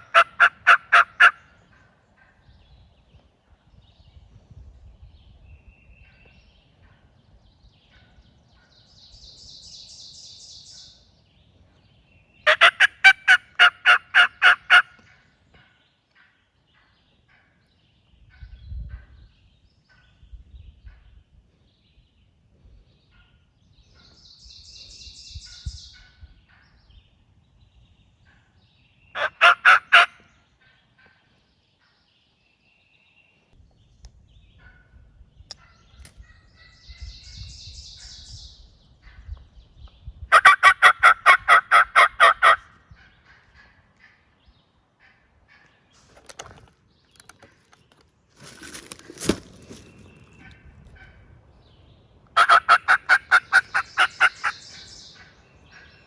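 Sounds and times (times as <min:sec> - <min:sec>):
turkey yelping: 0:00.0 - 0:01.4, 0:12.5 - 0:14.9, 0:29.2 - 0:30.2, 0:40.3 - 0:42.7, 0:52.3 - 0:54.6.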